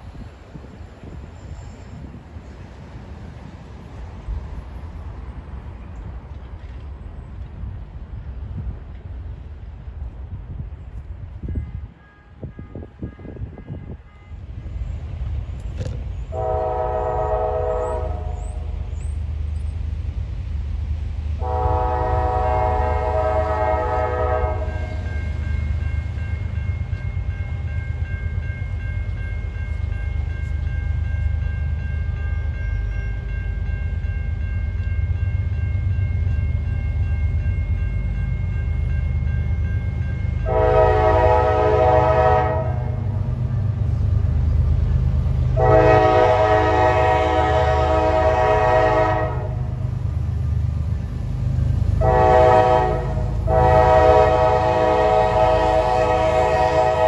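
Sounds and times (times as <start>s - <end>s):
passing train rumbling: 0.0s - 57.0s
train horn blasts: 11.4s - 14.7s, 15.8s - 18.9s, 21.4s - 26.3s, 40.4s - 43.8s, 45.2s - 50.1s, 51.8s - 57.0s.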